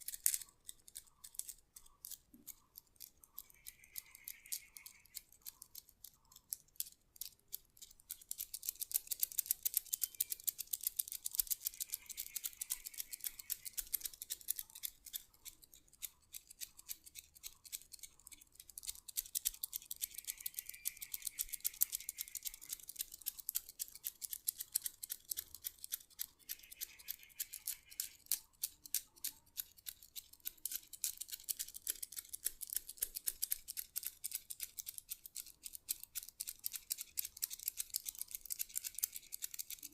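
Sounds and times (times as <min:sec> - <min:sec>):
massage tool scratchy clicks: 0:00.0 - 0:39.9.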